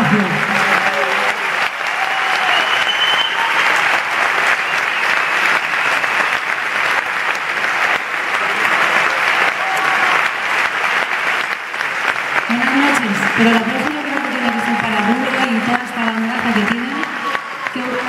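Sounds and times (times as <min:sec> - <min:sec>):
audience applauding loudly: 0:00.0 - 0:18.0
high whistle from crowd: 0:02.2 - 0:03.8, 0:04.5 - 0:06.4, 0:17.1 - 0:18.0.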